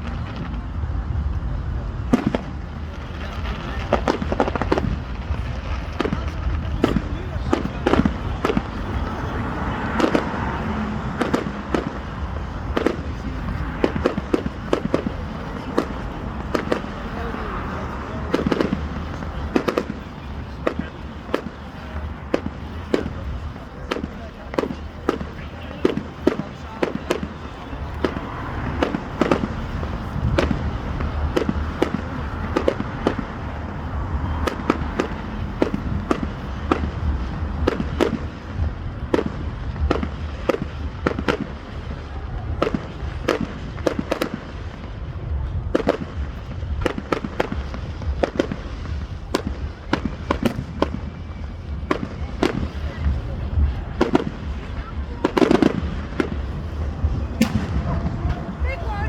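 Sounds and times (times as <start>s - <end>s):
fireworks bangs and crackles: 0.0s - 59.0s
low rumble: 47.6s - 59.0s.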